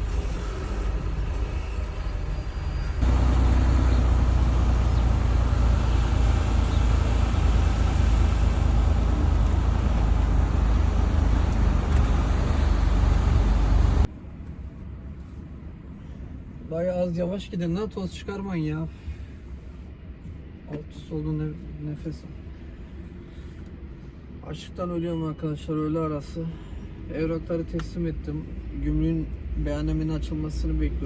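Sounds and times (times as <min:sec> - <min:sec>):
vehicle engine rumble: 0:00.0 - 0:16.8
road noise: 0:00.0 - 0:31.0.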